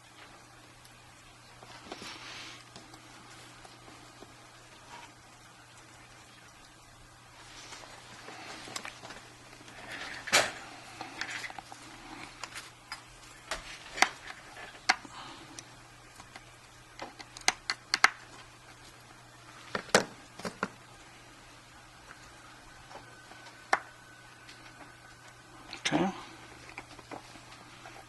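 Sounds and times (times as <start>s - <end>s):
small parts and tools clicking: 16.2s - 18.3s.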